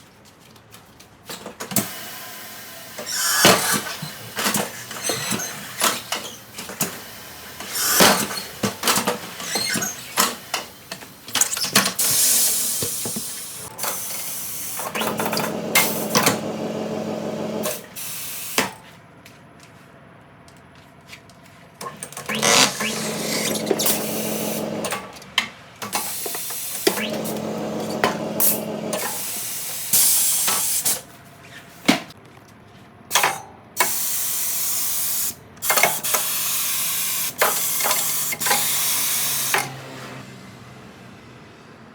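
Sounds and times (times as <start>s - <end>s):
turntable motor running: 14.7s - 17.9s, 22.3s - 25.1s, 26.8s - 29.3s.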